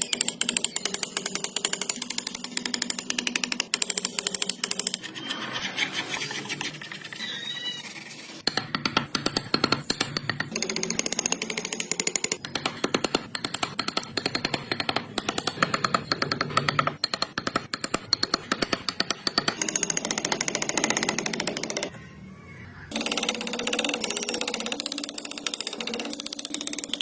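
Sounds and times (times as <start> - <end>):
power tool hammering wood: 8.5 - 21.9.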